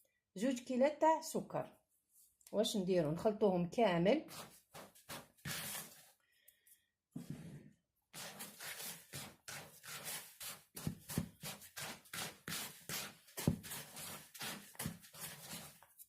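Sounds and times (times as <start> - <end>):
hands mixing grains in a bowl: 4.3 - 6.0, 8.2 - 16.0.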